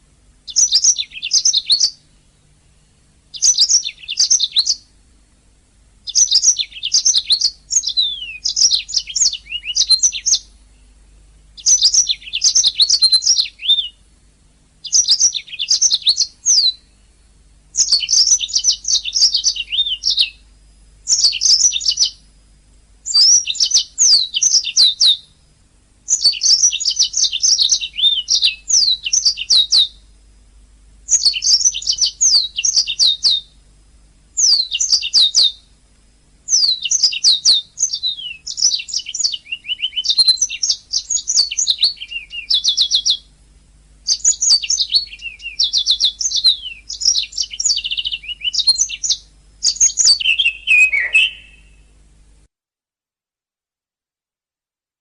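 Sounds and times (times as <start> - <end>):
canary singing: 0.5 - 2.1, 3.3 - 4.9, 6.0 - 14.1, 14.8 - 22.3, 23.0 - 25.4, 26.1 - 30.1, 31.1 - 33.6, 34.4 - 35.7, 36.4 - 43.3, 44.0 - 51.9.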